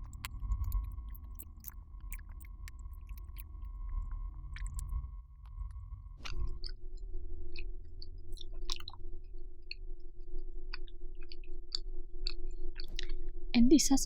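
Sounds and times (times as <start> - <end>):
close chewing mouth clicks: 0.0 - 6.8, 8.4 - 9.0, 10.7 - 13.2
steady low hum: 0.0 - 14.0.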